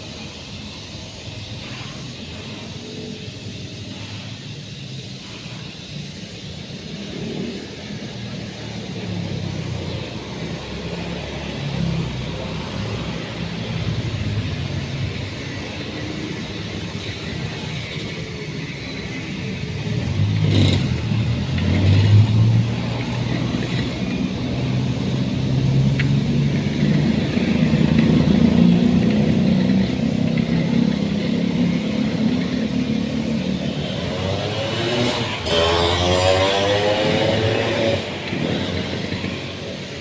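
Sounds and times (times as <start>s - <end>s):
engine revving up: 19.0s - 40.0s.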